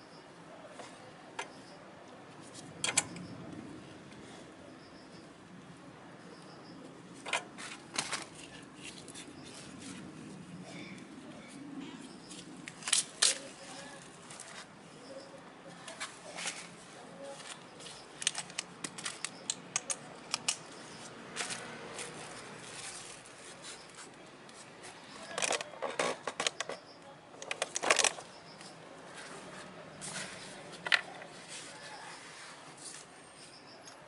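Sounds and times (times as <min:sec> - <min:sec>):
hand tools clicking and knocking: 0:17.5 - 0:20.8.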